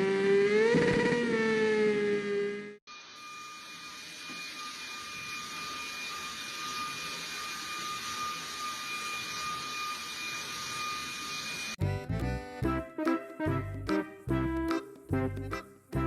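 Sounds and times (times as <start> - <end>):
small electric motor whine: 0.0 - 11.8.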